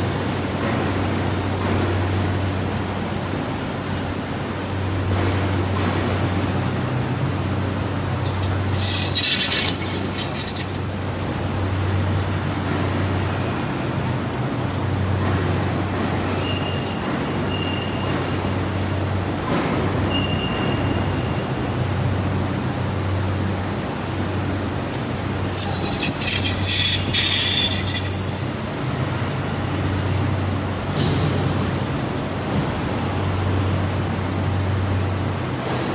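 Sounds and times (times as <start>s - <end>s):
metal squealing against rollers: 8.2s - 12.4s, 25.0s - 30.0s.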